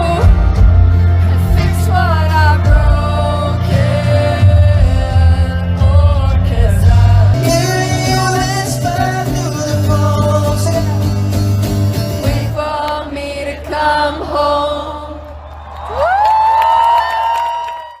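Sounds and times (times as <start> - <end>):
heavy sustained bass notes: 0.0 - 12.6
guitar: 0.0 - 14.3
person singing: 0.0 - 15.2.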